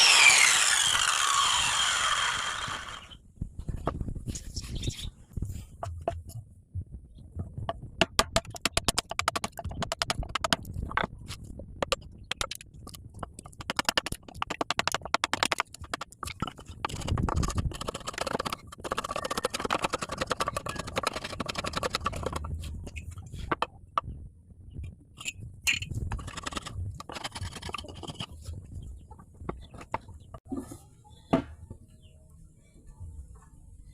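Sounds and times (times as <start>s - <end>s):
wood scraping: 0.0s - 3.1s, 25.2s - 28.6s.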